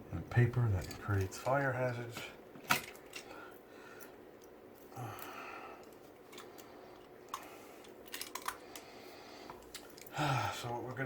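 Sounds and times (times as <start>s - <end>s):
person sighing: 4.9s - 5.8s, 10.1s - 10.7s.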